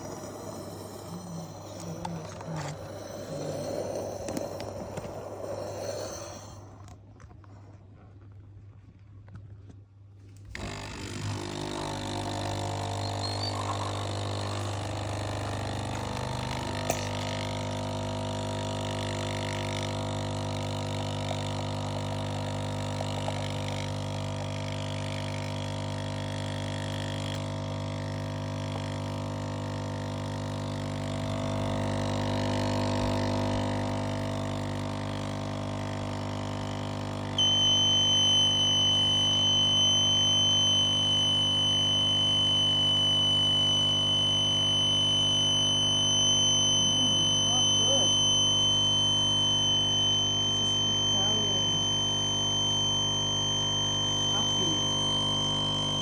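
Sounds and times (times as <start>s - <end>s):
steady high-pitched tone: 0.0s - 7.0s, 37.4s - 56.0s
espresso machine pump humming: 0.0s - 7.1s, 10.4s - 56.0s.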